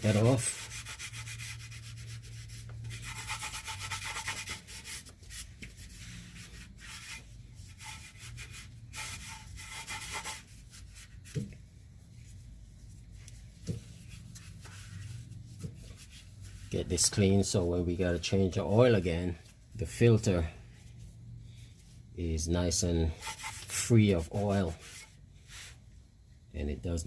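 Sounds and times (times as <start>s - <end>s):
rag rubbing metal: 0.0s - 11.5s, 23.1s - 25.2s
low steady hum: 0.0s - 27.0s.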